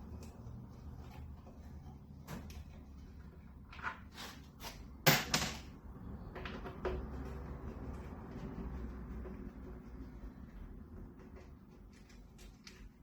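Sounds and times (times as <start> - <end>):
tools and parts clunking: 5.0 - 5.8.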